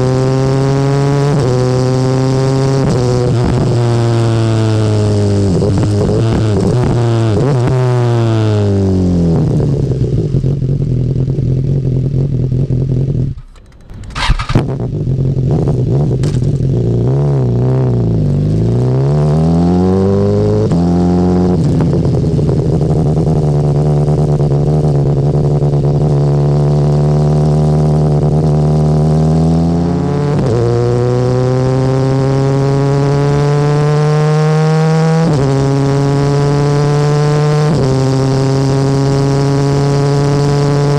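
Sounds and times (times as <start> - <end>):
motorcycle engine revving: 0.0 - 40.9
exhaust cracks: 12.3 - 16.9.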